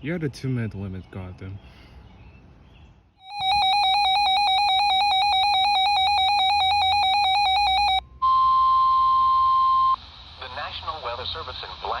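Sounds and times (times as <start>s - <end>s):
electronic warbling tone: 3.2s - 8.0s
steady warning alarm tone: 3.2s - 9.0s.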